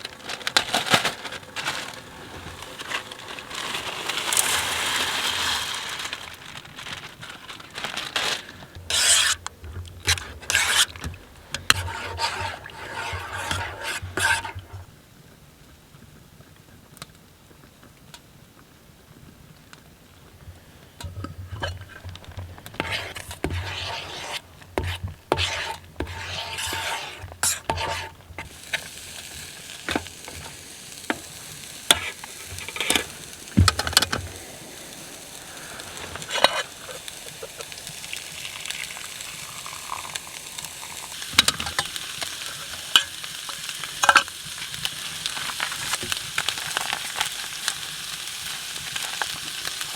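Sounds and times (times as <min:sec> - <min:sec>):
food sizzling: 0:00.0 - 0:15.1, 0:19.1 - 0:49.9
utensil stirring in a pot: 0:08.5 - 0:14.9, 0:20.2 - 0:49.9.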